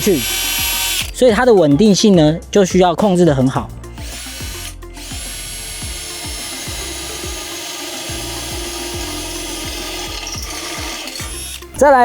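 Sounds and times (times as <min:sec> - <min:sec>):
power drill whining into steel: 0:00.0 - 0:01.2, 0:03.9 - 0:11.8
background music with beat: 0:00.0 - 0:12.0.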